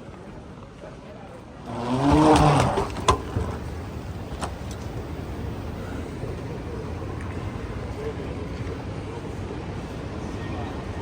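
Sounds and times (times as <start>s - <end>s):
steady rumble: 1.7s - 10.3s.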